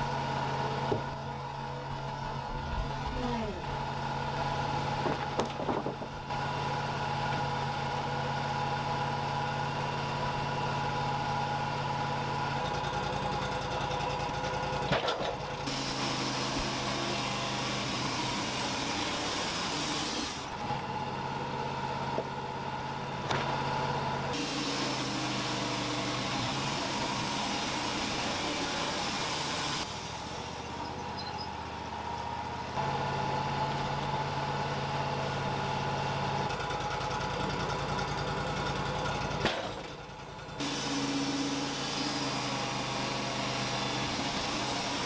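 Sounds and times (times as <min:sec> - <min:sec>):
band sawmill engine running: 0:00.0 - 0:45.0
saw hissing through log: 0:15.6 - 0:20.6, 0:24.3 - 0:31.2, 0:40.6 - 0:45.0.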